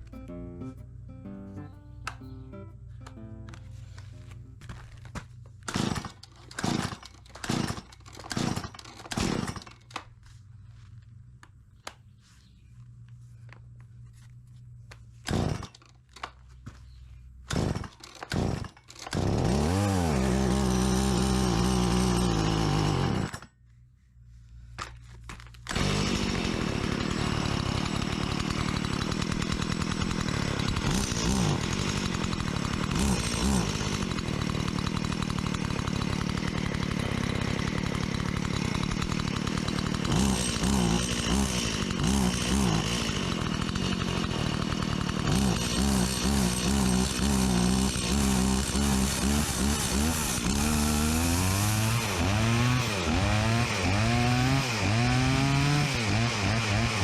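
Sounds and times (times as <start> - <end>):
chainsaw pull-start: 4.7 - 10.1, 15.2 - 16.9, 17.5 - 23.6, 24.8 - 57.0
chainsaw engine running and revving: 18.4 - 23.4, 25.7 - 57.0.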